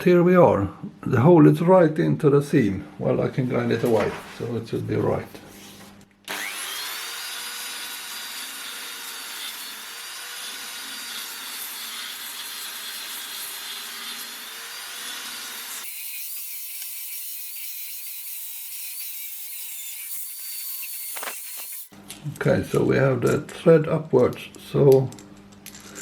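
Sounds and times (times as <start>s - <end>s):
power tool grinding steel: 6.3s - 21.9s.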